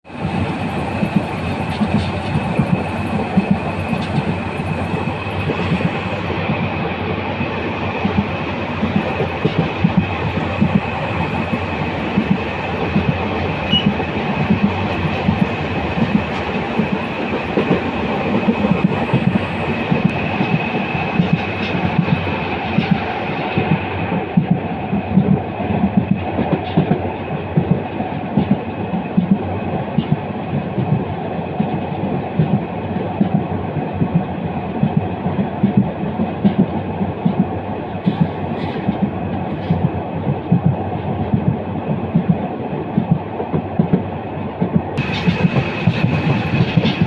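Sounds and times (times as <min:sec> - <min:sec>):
train rumble and rattle: 0:00.0 - 0:47.0
wheels clacking over rail joints: 0:44.6 - 0:47.0.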